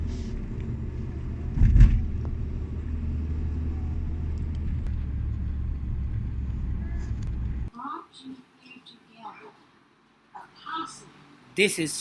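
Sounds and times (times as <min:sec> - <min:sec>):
car road and engine rumble: 0:00.0 - 0:07.7
thump in car: 0:01.5 - 0:02.4.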